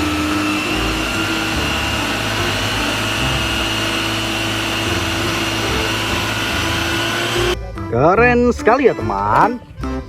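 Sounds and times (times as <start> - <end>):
small motor humming with whine: 0.0 - 7.6.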